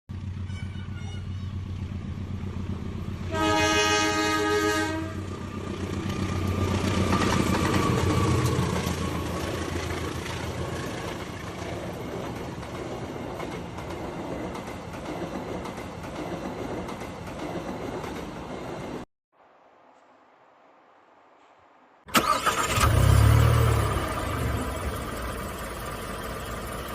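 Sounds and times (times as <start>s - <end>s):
train rumbling: 0.1s - 19.1s
train horn: 3.2s - 5.3s.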